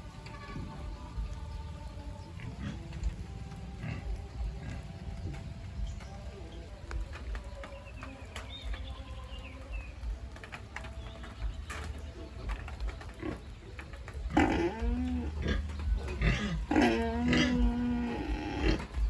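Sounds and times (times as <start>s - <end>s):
pigs calling: 2.2s - 6.7s, 12.1s - 19.0s.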